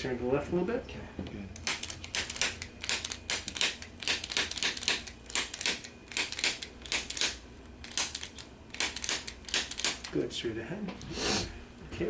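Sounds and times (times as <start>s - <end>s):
sharp clicks: 1.6s - 10.2s.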